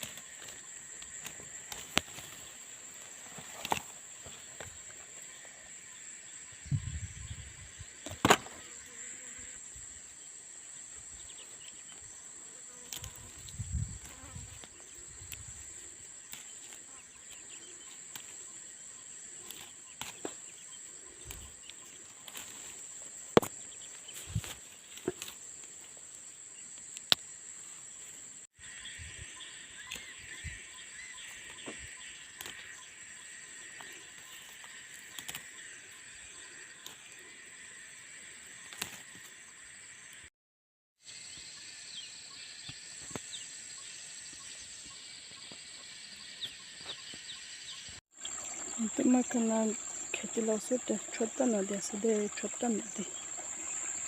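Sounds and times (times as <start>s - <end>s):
high-pitched insect buzz: 0.0s - 22.9s
lower insect buzz: 0.0s - 40.3s, 48.2s - 54.0s.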